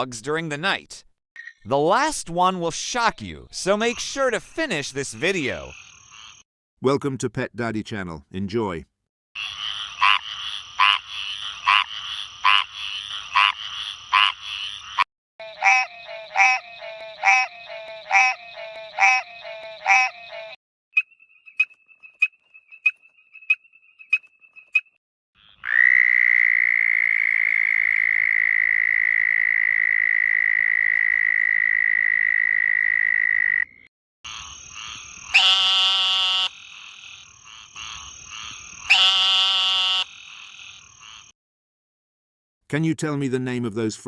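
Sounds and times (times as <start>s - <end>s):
frogs harsh buzzing croaks: 5.2s - 6.4s, 9.4s - 41.4s
frogs high pips: 5.2s - 6.4s, 9.4s - 41.3s
frog long high call: 9.4s - 20.6s, 25.4s - 41.3s.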